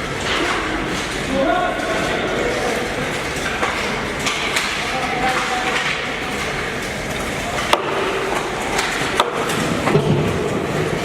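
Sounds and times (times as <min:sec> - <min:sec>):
ice rink noise: 0:00.0 - 0:11.0
hockey sticks knocking puck: 0:03.1 - 0:10.9.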